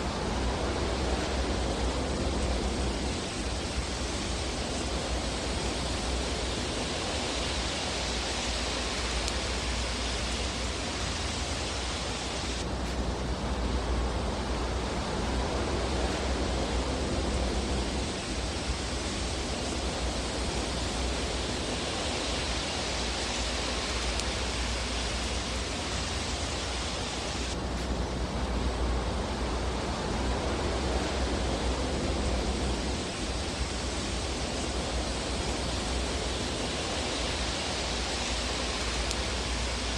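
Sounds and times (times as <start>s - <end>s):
fireplace rushing hiss: 0.0s - 39.9s.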